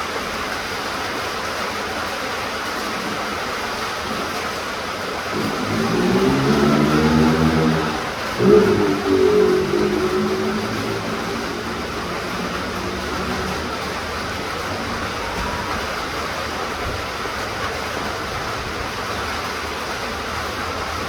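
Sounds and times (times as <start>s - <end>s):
steady rain hissing: 2.6s - 21.0s
passing vehicle engine: 5.2s - 18.3s.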